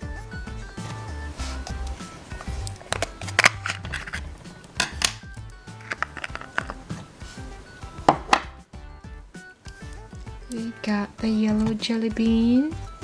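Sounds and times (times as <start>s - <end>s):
background music: 0.0s - 13.0s
plastic figures clicking: 1.7s - 5.2s, 5.8s - 7.0s.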